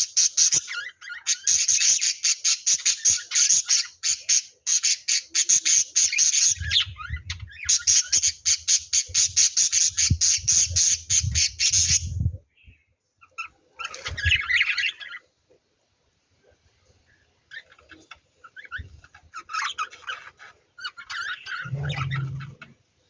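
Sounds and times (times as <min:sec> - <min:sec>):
lovebirds squawking: 0:17.5 - 0:22.8.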